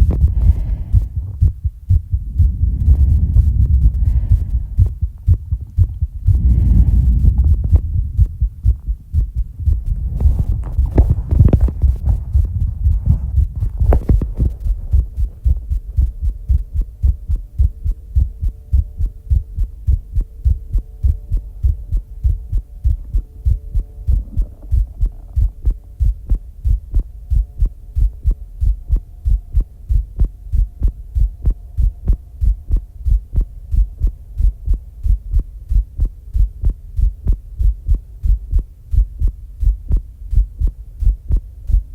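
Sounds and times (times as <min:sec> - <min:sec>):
heavy breathing: 0:00.0 - 0:14.8
heartbeat thumps: 0:00.0 - 0:41.9.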